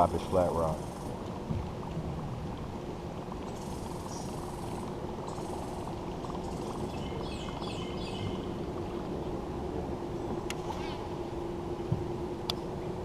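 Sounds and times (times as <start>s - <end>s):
faint steady hum: 0.0s - 13.0s
rumble of moving air and water: 0.0s - 13.0s
songbird chirping: 3.4s - 8.6s.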